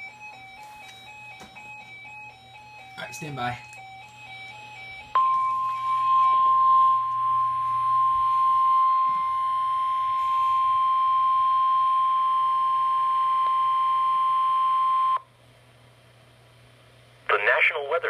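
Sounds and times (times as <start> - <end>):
steady high-pitched alert tone: 2.6 - 15.2.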